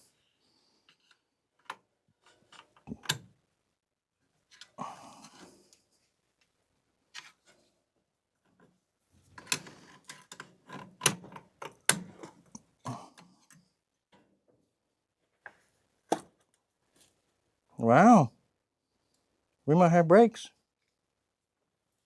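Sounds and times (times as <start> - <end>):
clicks and knocks from hands working: 9.4 - 13.6.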